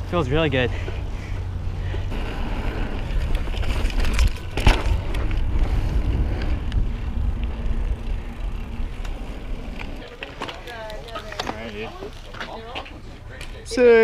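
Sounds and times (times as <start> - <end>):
bike rolling over dirt trail: 0.8 - 13.1
wind rumbling on microphone: 1.4 - 10.0
bike knocks and rattles: 3.0 - 5.8.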